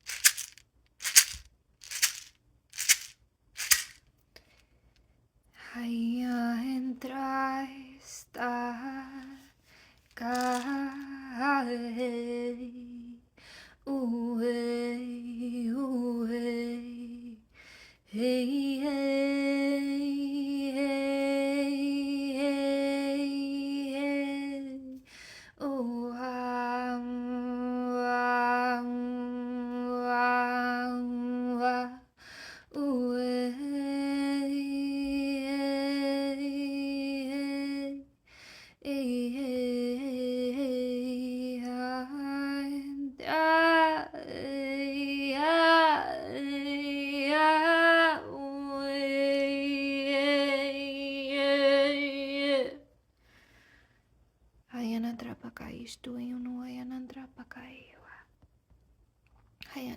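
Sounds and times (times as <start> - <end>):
breaths between phrases: 25.0 - 25.6, 32.2 - 32.8, 53.1 - 54.1.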